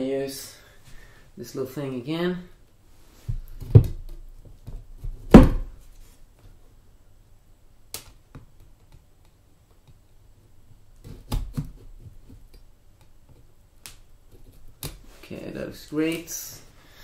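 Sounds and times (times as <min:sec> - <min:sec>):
cardboard box thuds and knocks: 0:04.7 - 0:05.7.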